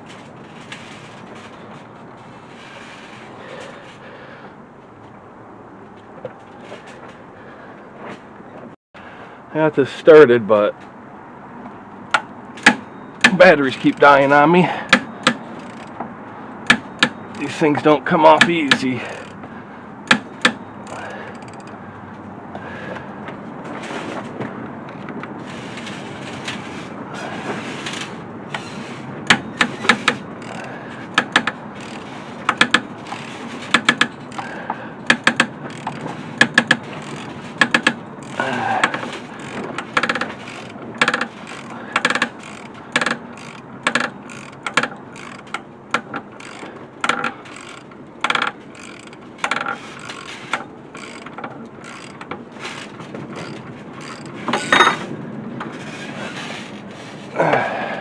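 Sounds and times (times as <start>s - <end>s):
socket ratchet clicking: 12.1s - 19.4s, 20.1s - 21.8s, 28.6s - 55.0s.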